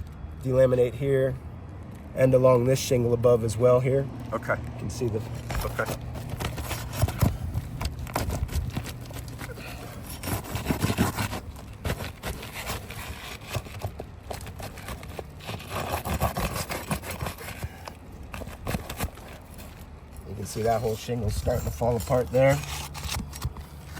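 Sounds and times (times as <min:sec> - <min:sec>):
roof shingles being pried and scraped: 0:05.0 - 0:23.9.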